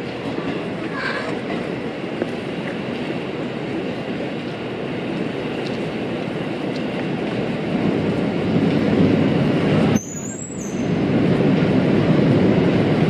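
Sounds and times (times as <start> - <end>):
train wheels rumbling on track: 0.0 - 13.0.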